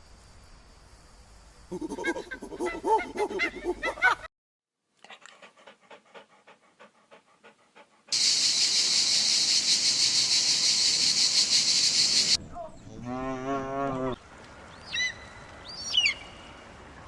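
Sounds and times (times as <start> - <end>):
animal panting breaths: 5.1 - 8.3.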